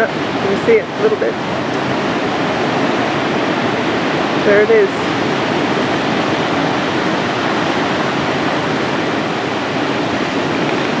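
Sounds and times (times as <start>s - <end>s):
waves breaking: 0.0s - 11.0s.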